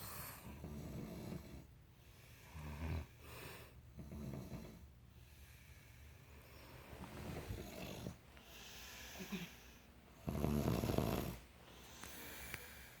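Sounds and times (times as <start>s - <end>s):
person snoring: 10.2s - 11.4s.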